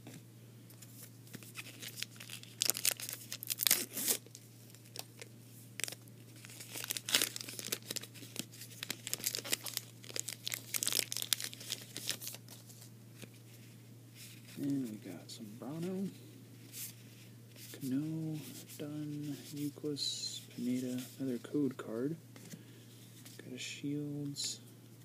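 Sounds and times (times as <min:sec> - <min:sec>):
plastic wrapper tearing and crinkling: 0:01.3 - 0:12.8.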